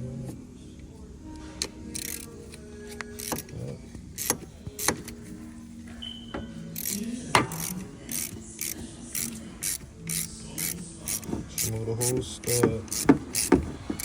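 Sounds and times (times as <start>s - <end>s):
hand ratchet clicking: 1.6s - 5.3s, 6.7s - 14.0s.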